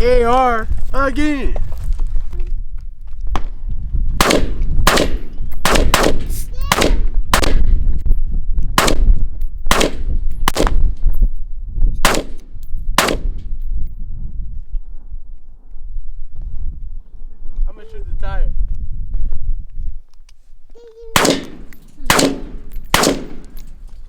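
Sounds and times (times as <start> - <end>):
rifle shots: 4.2 - 7.8, 8.8 - 9.1, 9.7 - 10.9, 12.0 - 13.5, 21.2 - 23.8.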